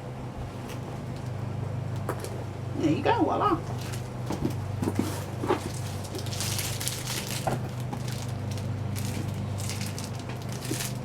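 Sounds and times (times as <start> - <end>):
steady low hum: 0.0 - 11.0
bag rustling and crackling: 3.7 - 11.0.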